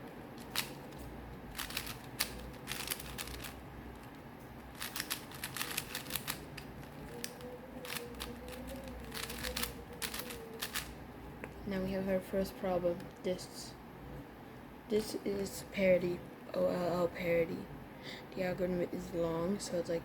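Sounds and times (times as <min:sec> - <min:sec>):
puzzle cube layers clicking: 0:01.5 - 0:04.1, 0:04.7 - 0:10.9.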